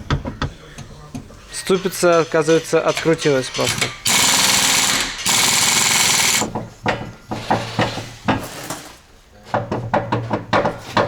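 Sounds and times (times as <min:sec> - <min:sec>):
impact wrench hammering: 0:03.6 - 0:06.7.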